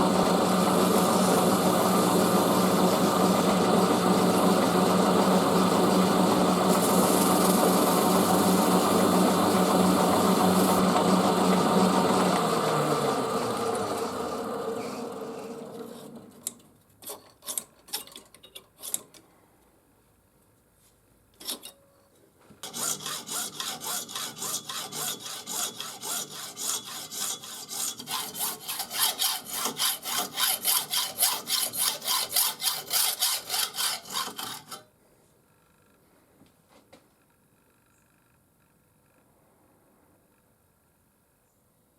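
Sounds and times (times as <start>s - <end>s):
motor running down: 0.0s - 16.4s
hand tool rasping strokes: 22.6s - 34.9s.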